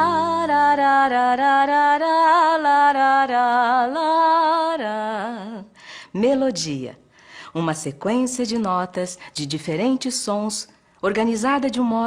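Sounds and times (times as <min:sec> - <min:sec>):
person singing with vibrato: 0:00.0 - 0:05.8.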